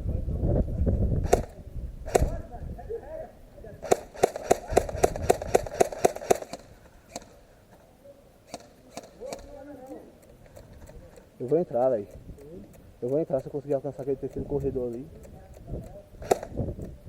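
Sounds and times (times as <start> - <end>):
airsoft gun shots: 1.2 - 2.5, 3.8 - 7.4, 8.5 - 9.7, 16.2 - 16.6.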